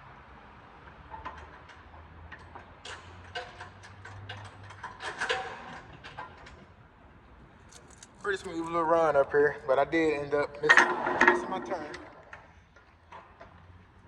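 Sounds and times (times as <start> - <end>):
light clicks and metallic clinks: 1.1 - 6.7.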